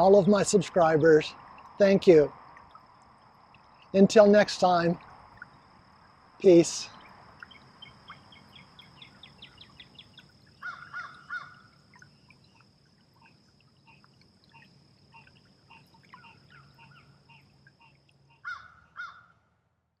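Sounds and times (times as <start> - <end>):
birds chirping: 6.4 - 12.6
loud harsh bird calls: 10.6 - 11.7, 18.4 - 19.3.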